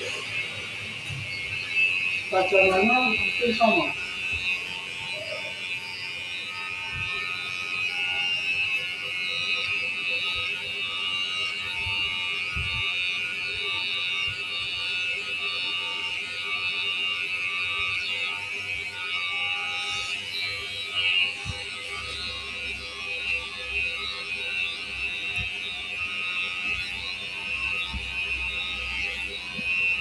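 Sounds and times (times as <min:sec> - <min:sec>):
electric hair clipper buzzing: 0:00.0 - 0:30.0.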